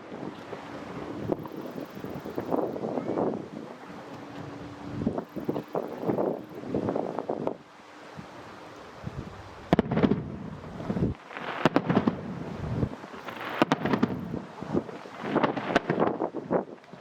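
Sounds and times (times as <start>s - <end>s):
fireworks crackling: 0.0s - 17.0s
fireworks bangs: 9.6s - 16.7s.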